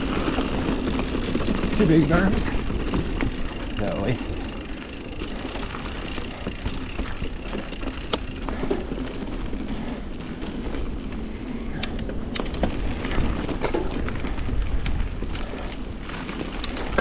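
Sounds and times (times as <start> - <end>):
bike clicks and rattles: 0.0 - 17.0
bike rolling on dirt trail: 0.0 - 17.0
wind buffeting microphone: 0.0 - 17.0.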